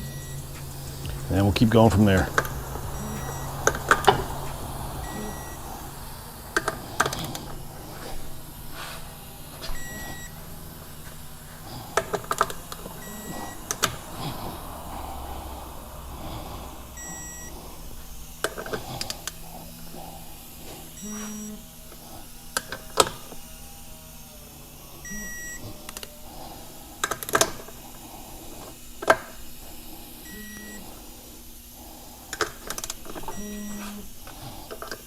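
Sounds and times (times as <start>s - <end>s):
torque gun beeps: 0.0s - 6.0s, 9.6s - 10.5s, 12.9s - 14.1s, 17.0s - 17.6s, 21.0s - 21.6s, 25.0s - 25.7s, 30.3s - 30.9s, 33.2s - 34.0s.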